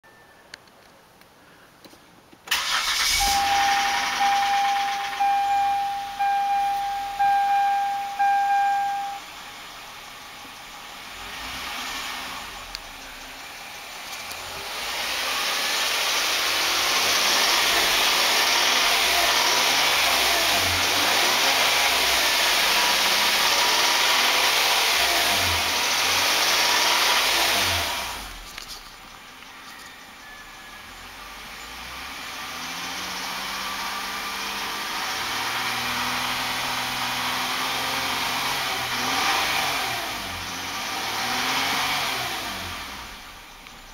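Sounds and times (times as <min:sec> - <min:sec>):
car engine idling and revving: 0:02.5 - 0:43.9
beeping tone: 0:03.2 - 0:09.3.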